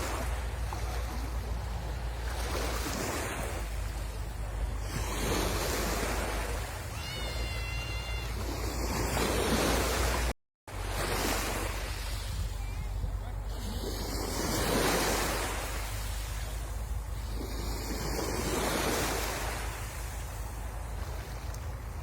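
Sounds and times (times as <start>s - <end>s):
sea waves breaking on shore: 0.0s - 22.0s
wind rumble on microphone: 8.0s - 22.0s.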